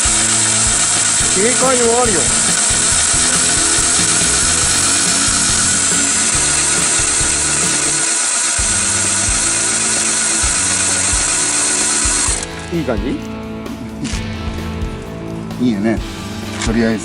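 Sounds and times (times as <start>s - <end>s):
starter motor cranking engine: 0.0s - 13.0s.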